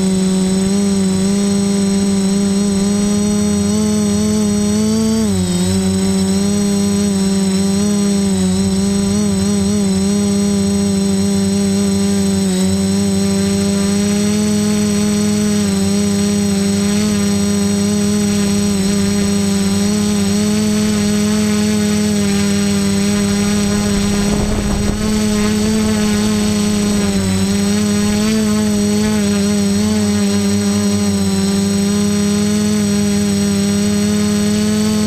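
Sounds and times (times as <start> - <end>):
drone motors whining: 0.0 - 35.0.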